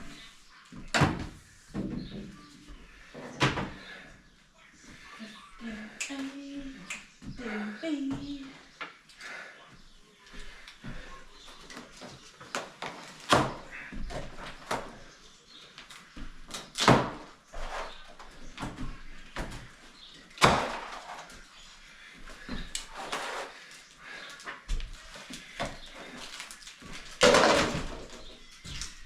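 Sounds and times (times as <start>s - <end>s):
objects knocking and clattering: 26.9s - 29.0s.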